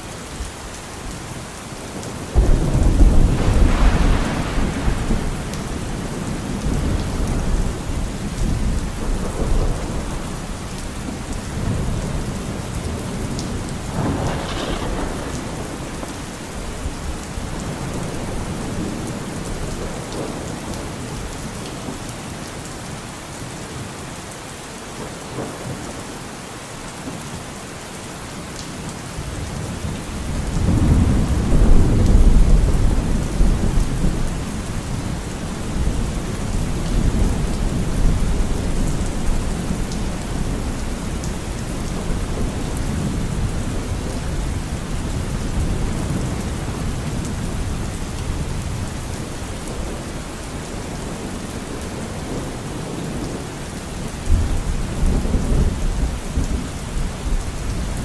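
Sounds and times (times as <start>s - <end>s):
steady rain falling: 0.0s - 58.0s
thunder rumbling: 2.2s - 20.5s, 29.9s - 51.0s.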